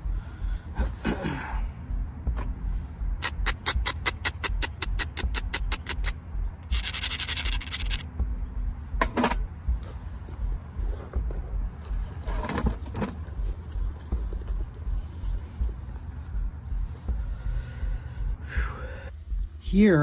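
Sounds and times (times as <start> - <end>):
sharp stone knapping clicks: 3.2 - 8.1.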